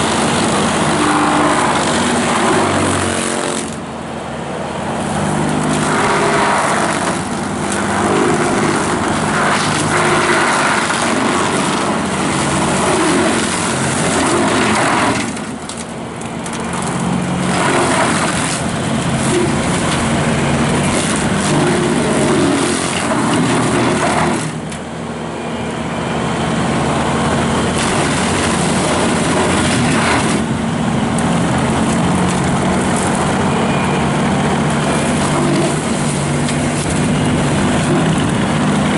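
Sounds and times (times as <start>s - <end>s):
blades cutting brush: 0.0s - 3.8s, 5.1s - 15.6s
skid steer engine running: 0.0s - 38.9s.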